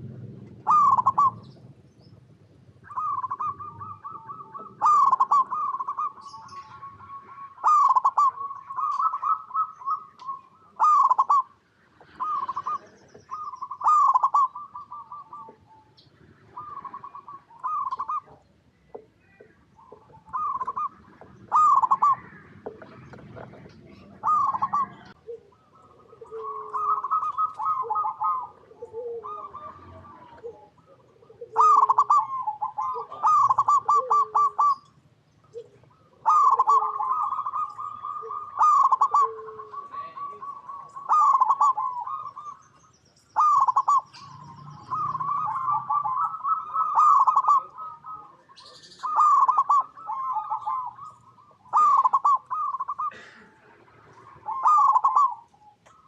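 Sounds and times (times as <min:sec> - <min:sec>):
dove cooing: 0:00.0 - 0:56.0
soft low coos: 0:14.0 - 0:34.8, 0:35.5 - 0:42.4.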